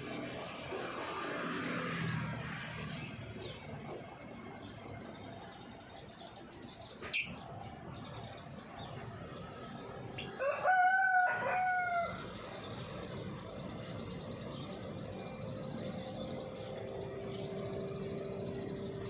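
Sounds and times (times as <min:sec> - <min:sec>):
rooster crowing: 0:10.3 - 0:12.5.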